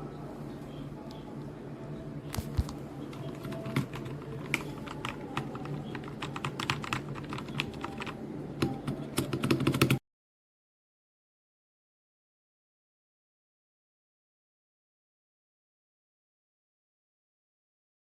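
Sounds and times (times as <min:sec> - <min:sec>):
mechanical keyboard typing: 0:02.6 - 0:10.0.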